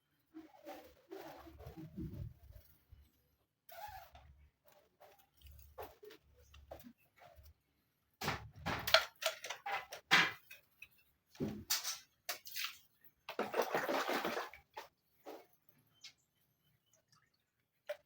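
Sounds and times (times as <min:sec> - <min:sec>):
water splashing and pouring: 0:13.3 - 0:14.9.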